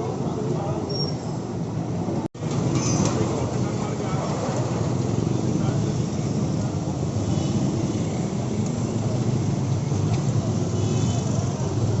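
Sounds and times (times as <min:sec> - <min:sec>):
traffic rumble: 0:00.0 - 0:12.0.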